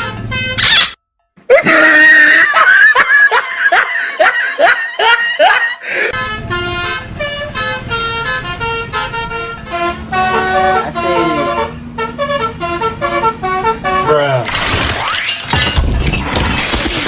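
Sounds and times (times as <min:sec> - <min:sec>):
multi-tone bus horn melody: 0:00.0 - 0:01.0, 0:06.1 - 0:14.4.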